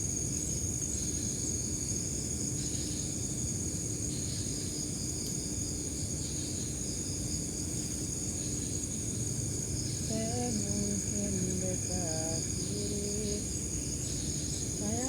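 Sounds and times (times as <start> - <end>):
night insects chirring: 0.1 - 15.0
faint low hum: 10.0 - 15.0.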